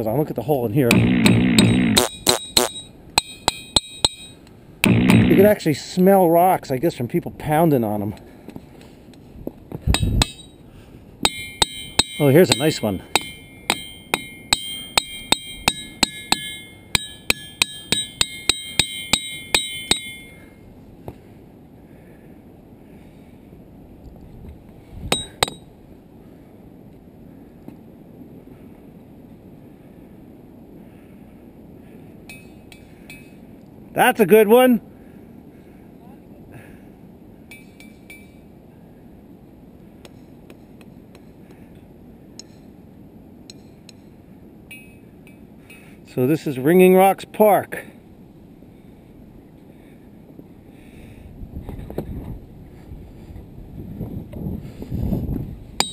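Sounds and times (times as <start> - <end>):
low background noise: 0.0 - 55.9
hammer striking ringing rock: 0.9 - 5.5, 9.9 - 10.6, 11.2 - 20.4, 25.1 - 25.7.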